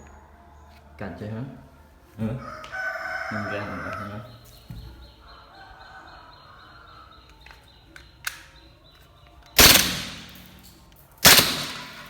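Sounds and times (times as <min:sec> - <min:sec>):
airsoft pistol shot: 0:09.6 - 0:10.5, 0:11.2 - 0:12.0.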